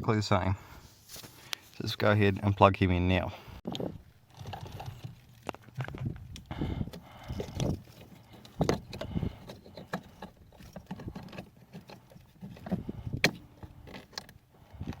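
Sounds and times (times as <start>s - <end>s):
plastic connectors rustling: 4.2s - 15.0s.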